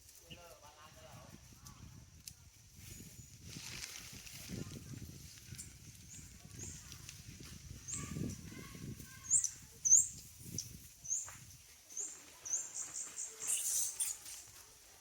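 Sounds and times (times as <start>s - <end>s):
animal high chirps: 13.2s - 14.3s.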